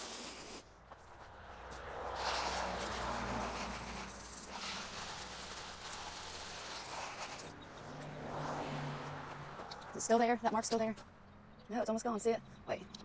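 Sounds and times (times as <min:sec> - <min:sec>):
hose spraying against door: 0:00.0 - 0:00.6, 0:02.2 - 0:07.5.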